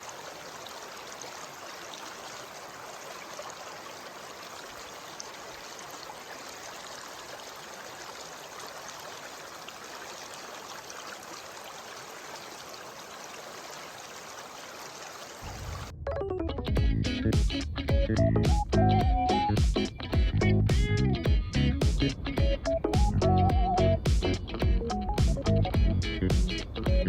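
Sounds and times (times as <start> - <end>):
stream flowing: 0.0 - 15.9.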